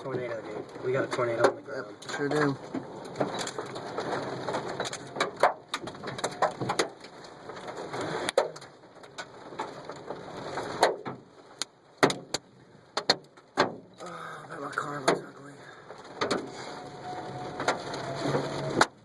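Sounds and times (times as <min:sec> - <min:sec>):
hailstones knocking on car: 0:00.0 - 0:14.0, 0:14.6 - 0:16.6.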